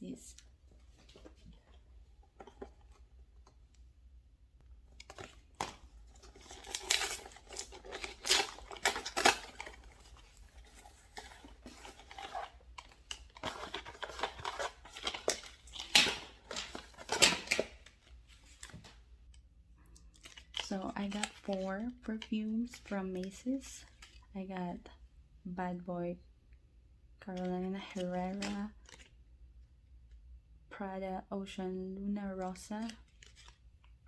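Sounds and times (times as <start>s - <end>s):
packaging tearing and crinkling: 5.0s - 18.9s.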